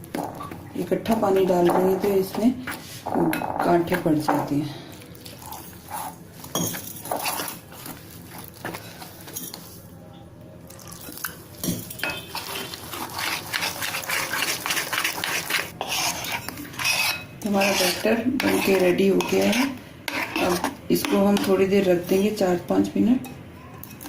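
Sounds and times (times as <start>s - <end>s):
utensil stirring batter in bowl: 5.2s - 9.8s, 11.0s - 22.4s.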